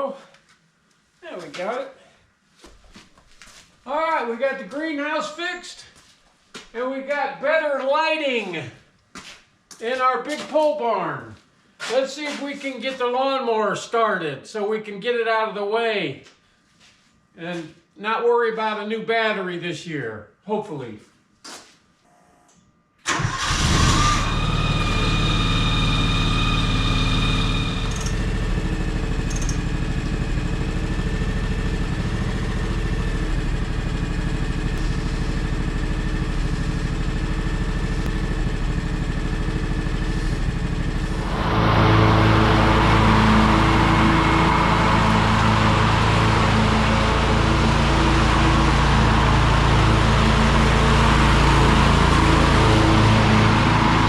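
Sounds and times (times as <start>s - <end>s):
lawnmower engine running: 23.1s - 54.0s.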